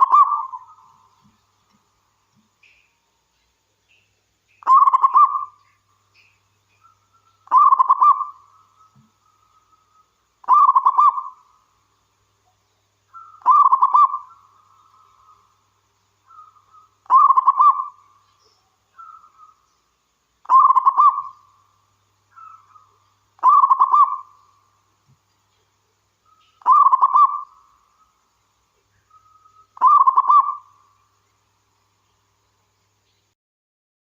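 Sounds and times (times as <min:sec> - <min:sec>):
dove cooing: 0:00.0 - 0:00.8, 0:04.6 - 0:05.6, 0:07.5 - 0:09.1, 0:10.4 - 0:11.4, 0:13.2 - 0:14.5, 0:16.3 - 0:18.0, 0:20.4 - 0:21.4, 0:22.3 - 0:24.3, 0:26.3 - 0:27.6, 0:29.1 - 0:30.7.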